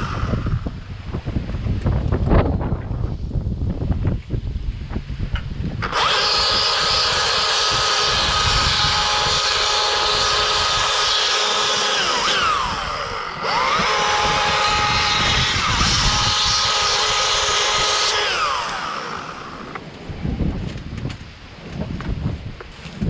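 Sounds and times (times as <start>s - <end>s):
chainsaw running at high revs: 0.0s - 0.8s, 5.8s - 19.8s
wind rumble on microphone: 0.0s - 23.0s.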